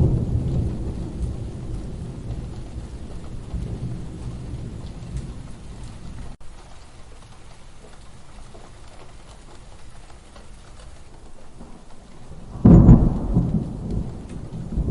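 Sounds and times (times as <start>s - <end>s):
loud thunderclap: 0.0s - 6.4s, 11.6s - 14.9s
low thunder rumble: 0.0s - 6.4s, 11.5s - 14.9s
steady rain falling: 0.0s - 14.9s.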